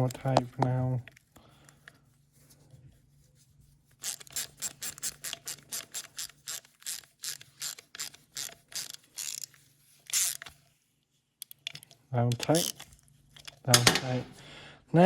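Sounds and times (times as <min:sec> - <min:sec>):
socket ratchet clicking: 0:04.0 - 0:09.5, 0:10.1 - 0:10.5, 0:11.4 - 0:14.1.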